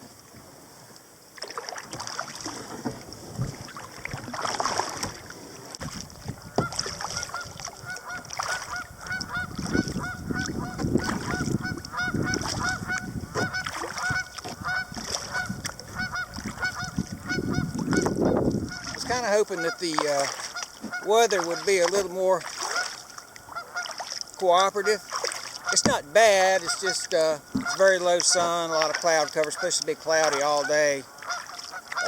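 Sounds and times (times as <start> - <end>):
kayak paddle strokes splashing: 0.0 - 32.0
geese honking: 6.5 - 32.0.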